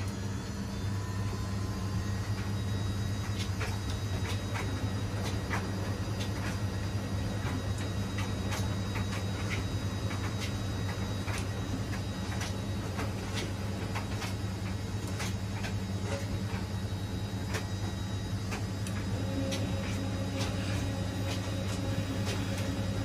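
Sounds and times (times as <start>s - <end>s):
washing machine humming: 0.0s - 23.0s.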